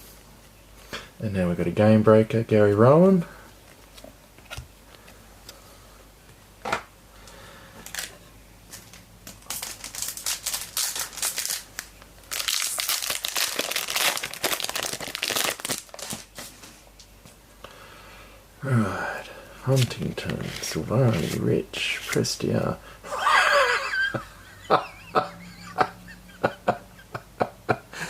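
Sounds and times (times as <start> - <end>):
foil wrapper crinkling and tearing: 7.8 - 8.1, 8.9 - 16.7.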